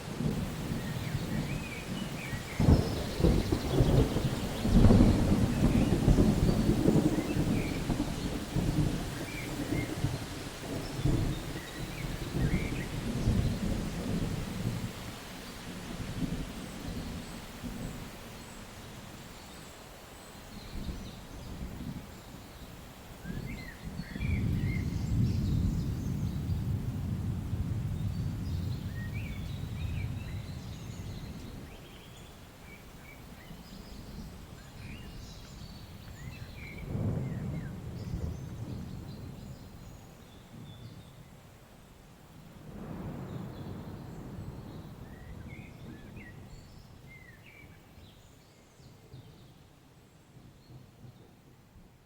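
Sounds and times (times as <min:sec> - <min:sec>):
distant thunder rumbling: 0:00.0 - 0:18.8, 0:23.2 - 0:31.9, 0:33.1 - 0:41.3, 0:42.5 - 0:47.3
faint rain hiss: 0:00.0 - 0:52.0
small birds chirping: 0:28.0 - 0:41.3.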